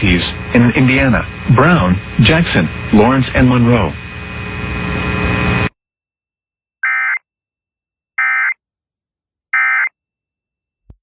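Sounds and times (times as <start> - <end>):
electronic hiss and hum: 0.0 - 5.8.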